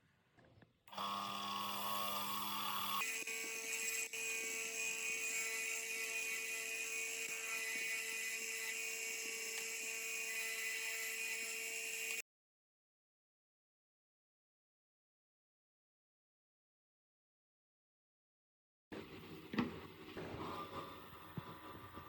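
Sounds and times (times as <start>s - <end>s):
power tool motor whirring: 0.9s - 12.2s.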